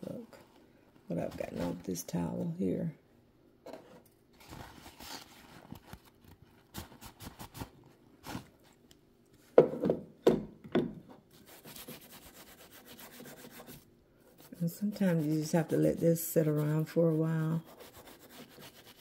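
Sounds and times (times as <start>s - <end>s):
paper towel scrubbing metal: 14.4s - 19.0s.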